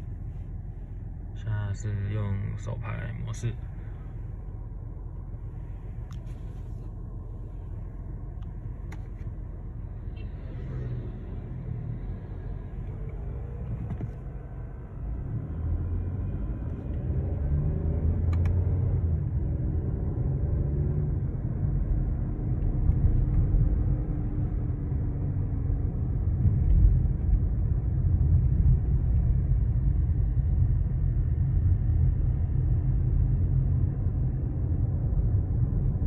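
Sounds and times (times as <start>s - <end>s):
car engine running: 0.0s - 20.2s.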